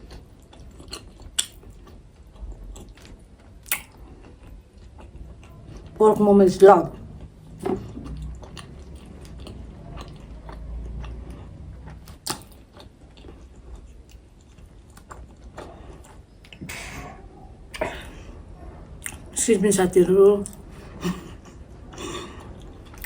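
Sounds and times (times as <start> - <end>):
chewing: 0.0 - 6.0, 6.9 - 17.2, 19.0 - 19.3, 20.4 - 23.0.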